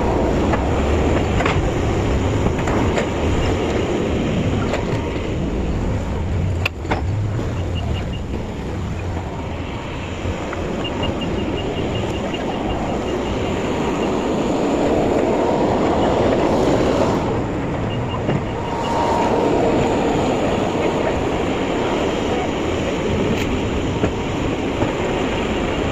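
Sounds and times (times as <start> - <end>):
truck driving: 0.0 - 25.2.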